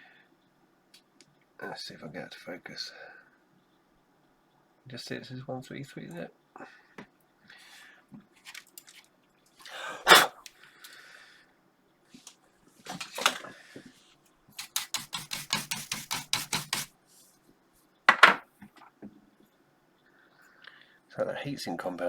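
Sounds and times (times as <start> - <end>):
clicks and knocks of computer parts: 12.9 - 13.5.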